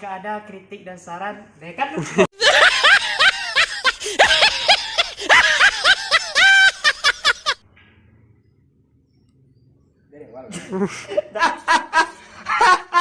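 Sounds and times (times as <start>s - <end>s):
person laughing: 2.0s - 7.6s, 10.5s - 13.0s.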